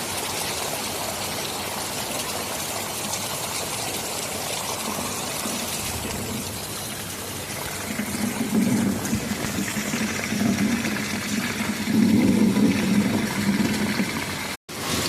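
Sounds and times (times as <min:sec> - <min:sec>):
heavy rain: 0:00.0 - 0:15.0
rumble of thunder: 0:07.7 - 0:14.3.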